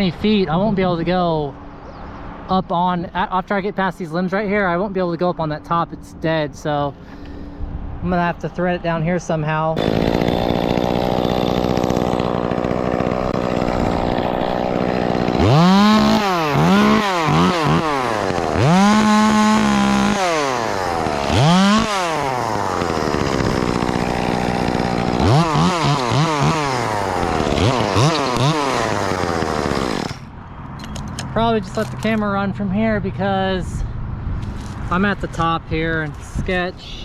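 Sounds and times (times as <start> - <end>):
chainsaw idling and revving: 9.8 - 30.3.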